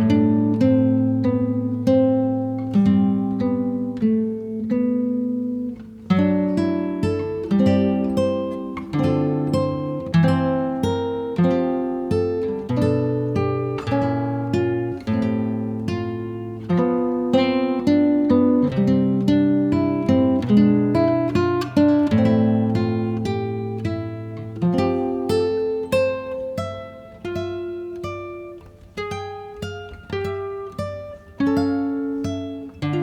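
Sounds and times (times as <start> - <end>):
plucked acoustic guitar: 0.0 - 33.0.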